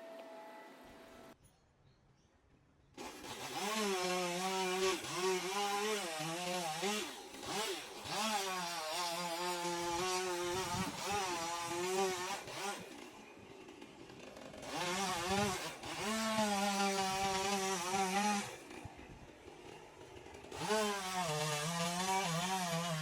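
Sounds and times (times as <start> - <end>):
two-stroke chainsaw revving: 3.0 - 23.0.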